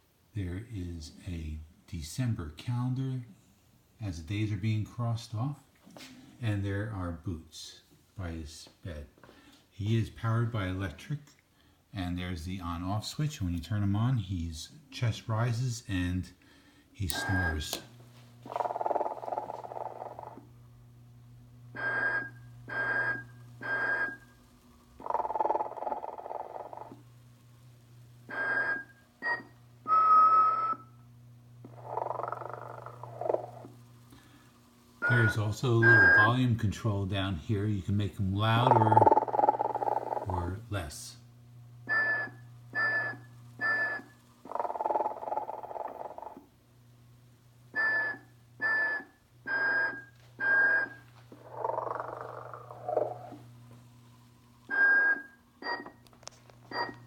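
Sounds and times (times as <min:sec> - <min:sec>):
steady low hum: 0:00.0 - 0:57.0
whistled notes from speaker: 0:35.0 - 0:36.4.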